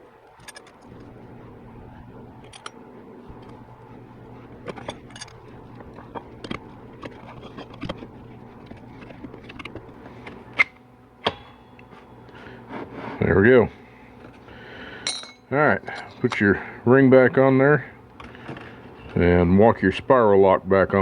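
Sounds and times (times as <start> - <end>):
steady low hum: 0.0 - 21.0
metal parts clicking and knocking: 0.3 - 0.9, 2.4 - 2.8, 4.6 - 8.0.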